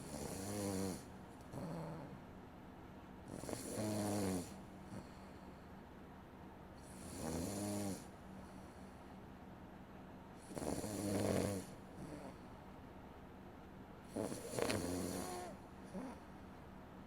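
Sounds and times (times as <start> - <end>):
person snoring: 3.3 - 5.0, 6.9 - 8.1, 10.5 - 12.4, 14.1 - 16.2.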